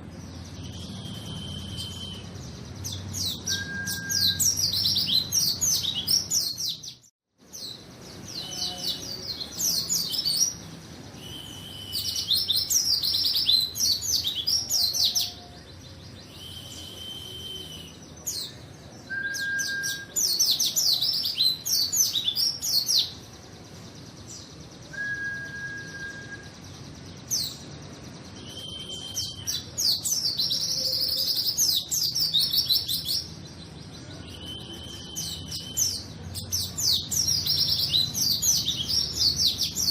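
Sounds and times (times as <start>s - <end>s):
bird whistled notes: 0.6s - 6.7s, 11.1s - 15.4s, 16.2s - 18.0s, 19.1s - 20.4s, 24.8s - 26.6s, 28.3s - 33.2s, 34.1s - 36.1s
bird high twittering: 7.6s - 15.6s, 27.3s - 33.4s, 34.0s - 39.9s.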